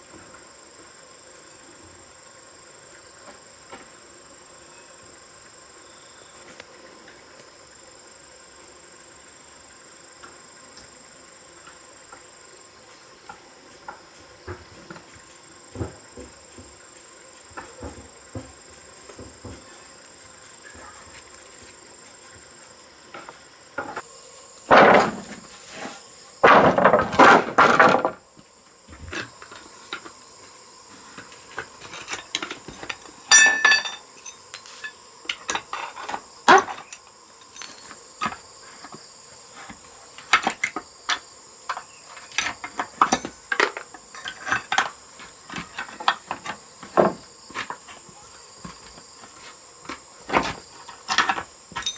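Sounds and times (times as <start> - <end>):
high insect drone: 0.0 - 51.9
knocks and clatter of hand work: 17.6 - 19.7, 24.7 - 25.4, 26.4 - 28.2, 31.1 - 39.0, 39.6 - 51.9.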